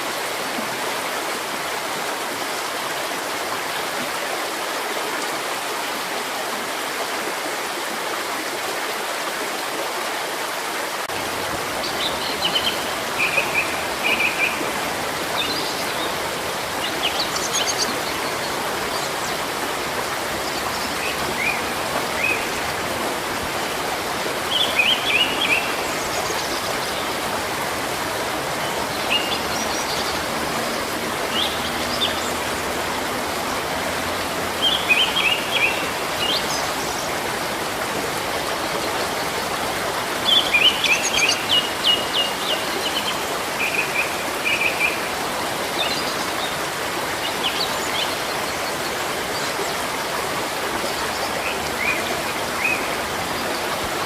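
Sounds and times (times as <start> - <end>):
stream rushing: 0.0 - 54.0.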